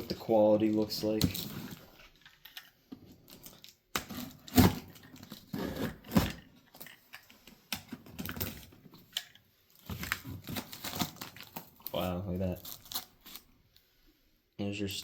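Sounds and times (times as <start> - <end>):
cardboard tearing and crinkling: 3.2 - 6.5, 9.8 - 13.6.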